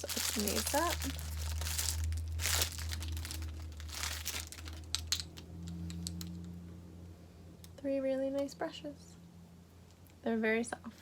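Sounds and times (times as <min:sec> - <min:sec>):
packaging crinkling and rustling: 0:00.0 - 0:06.3.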